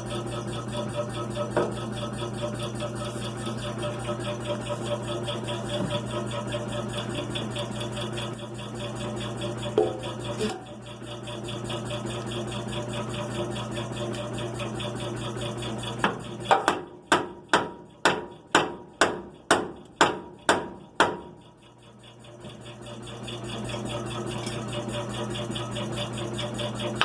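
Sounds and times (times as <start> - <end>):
hammer striking metal: 16.5 - 21.3.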